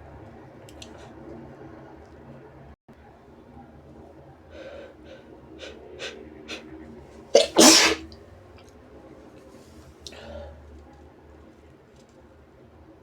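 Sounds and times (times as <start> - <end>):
catching intakes of breath: 4.5 - 6.7, 7.4 - 8.0
person sneezing: 7.4 - 8.0.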